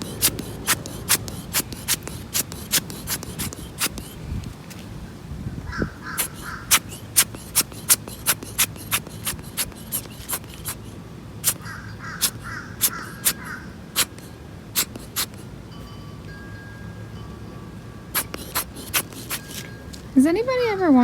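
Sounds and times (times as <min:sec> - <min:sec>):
quick sharp clicks: 0:00.0 - 0:04.2, 0:06.2 - 0:10.8, 0:11.4 - 0:11.6, 0:12.2 - 0:13.4, 0:14.0 - 0:15.4
crows cawing: 0:05.7 - 0:06.7, 0:11.6 - 0:13.8.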